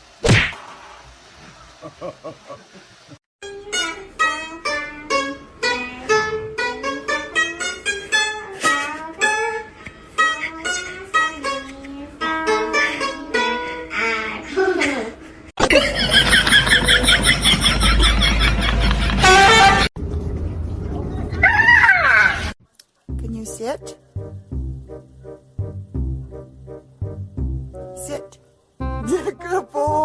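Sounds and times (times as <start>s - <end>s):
plucked string music: 3.4s - 14.0s, 28.8s - 30.0s.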